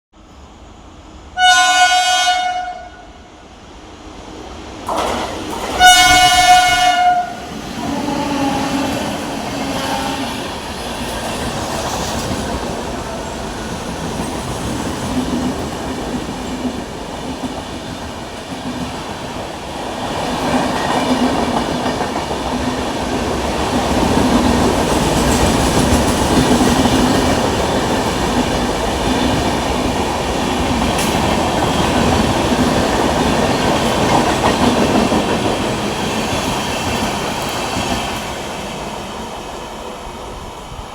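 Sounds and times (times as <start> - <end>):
locomotive horn blasts: 1.4 - 3.2, 5.8 - 8.9
train rumble and clatter: 3.2 - 40.9.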